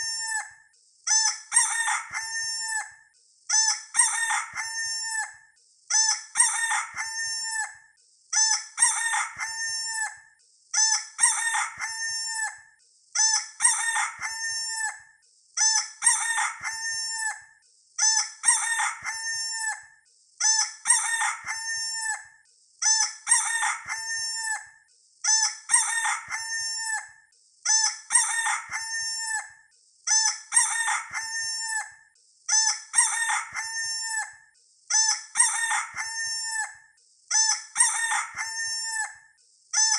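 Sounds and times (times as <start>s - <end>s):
rooster crowing: 1.6s - 2.9s, 4.0s - 5.3s, 6.4s - 7.7s, 8.8s - 10.2s, 11.2s - 12.6s, 13.6s - 15.0s, 16.0s - 17.4s, 18.4s - 19.9s, 20.9s - 22.3s, 23.3s - 24.7s, 25.7s - 27.1s, 28.1s - 29.5s, 30.5s - 31.9s, 32.9s - 34.3s, 35.4s - 36.7s, 37.8s - 39.2s.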